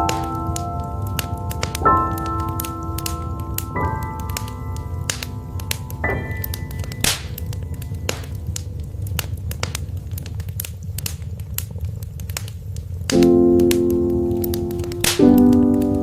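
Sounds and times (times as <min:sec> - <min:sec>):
soft piano chord: 0:00.0 - 0:10.2, 0:13.1 - 0:16.0
wood fire crackling and popping: 0:00.0 - 0:16.0.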